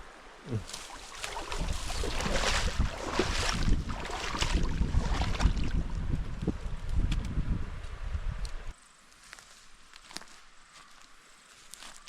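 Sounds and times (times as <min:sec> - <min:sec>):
river water flowing: 0:00.0 - 0:06.0
wind buffeting microphone: 0:01.2 - 0:08.7.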